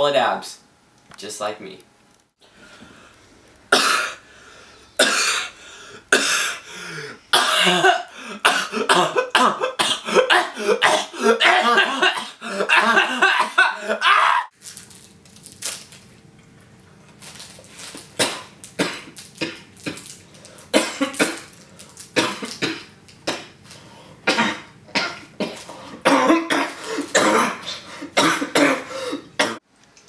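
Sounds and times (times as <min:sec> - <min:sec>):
man coughing: 0:03.7 - 0:04.2, 0:05.0 - 0:05.5, 0:06.1 - 0:14.4, 0:20.7 - 0:21.5, 0:22.2 - 0:23.5, 0:24.2 - 0:29.6.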